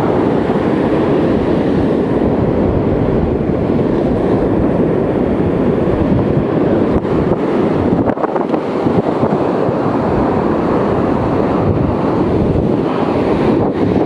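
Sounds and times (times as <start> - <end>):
ocean surf rushing: 0.0 - 14.0
wind buffeting microphone: 0.0 - 14.0.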